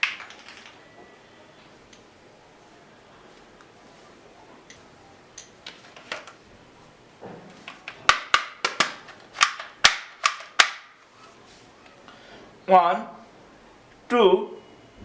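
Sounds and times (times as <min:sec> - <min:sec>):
toy gun sharp snaps: 0:08.1 - 0:11.0.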